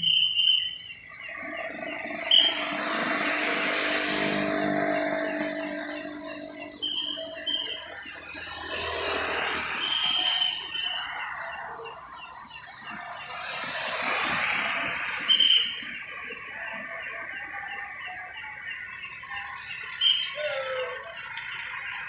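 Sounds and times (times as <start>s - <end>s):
shrill whistle blasts: 0.0s - 11.4s, 14.8s - 16.2s, 19.3s - 21.9s
passing traffic: 0.0s - 22.0s
rain hiss: 11.7s - 16.3s.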